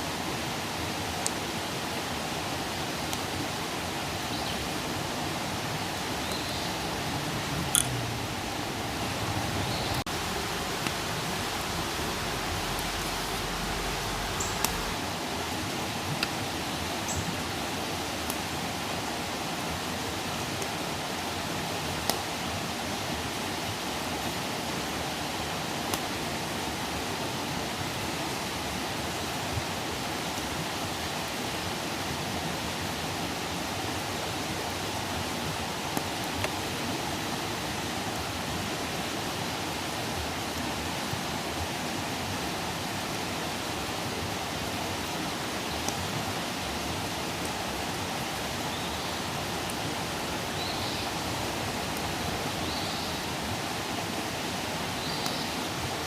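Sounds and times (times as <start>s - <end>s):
campfire hissing: 0.0s - 56.0s
fire popping: 9.9s - 15.0s.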